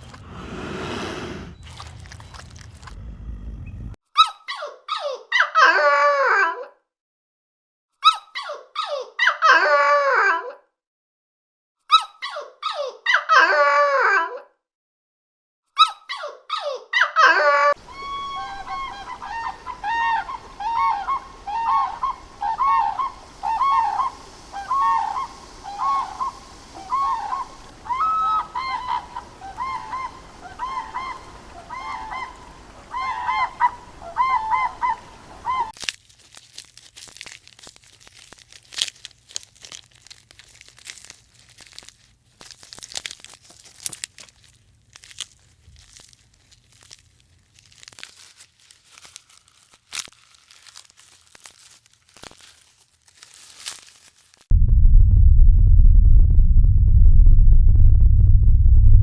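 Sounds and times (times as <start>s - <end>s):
crackling and rustling: 1.6s - 3.1s, 35.2s - 54.6s
waterfowl honking: 17.8s - 35.7s.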